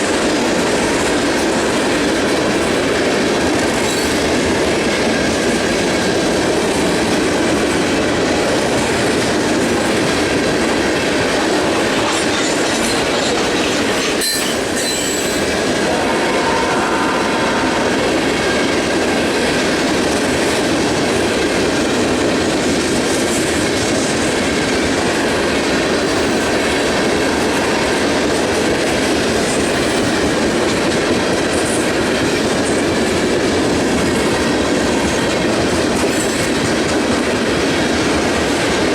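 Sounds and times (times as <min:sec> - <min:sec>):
freight train rolling past: 0:00.0 - 0:38.9.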